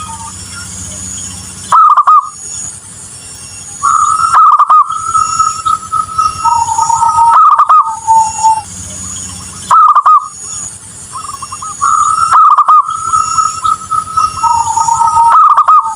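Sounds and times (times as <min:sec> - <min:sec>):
dove cooing: 0:01.7 - 0:02.4, 0:03.8 - 0:08.7, 0:09.3 - 0:10.4, 0:11.2 - 0:15.9
rapid warbling notes: 0:03.8 - 0:10.4, 0:11.1 - 0:15.9.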